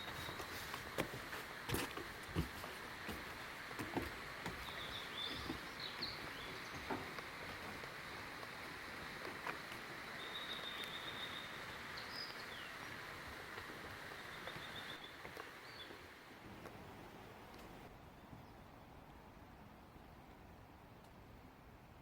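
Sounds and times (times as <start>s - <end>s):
steady outdoor hiss: 0.0s - 22.0s
small birds calling: 4.5s - 7.3s, 9.6s - 13.2s, 14.0s - 16.1s.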